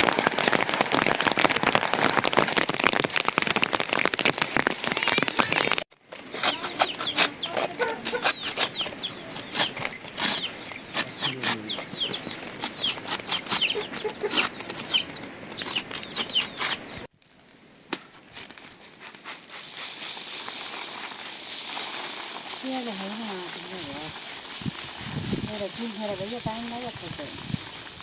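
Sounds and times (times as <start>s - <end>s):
chicks peeping: 6.2s - 17.0s
rain hissing: 19.4s - 28.0s.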